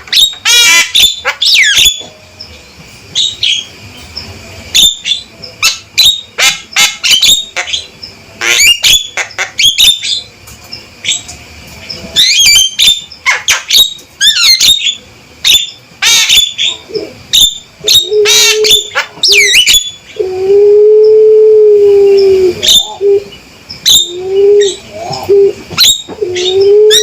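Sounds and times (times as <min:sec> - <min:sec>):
myna squawking and whistling: 0:12.2 - 0:27.0.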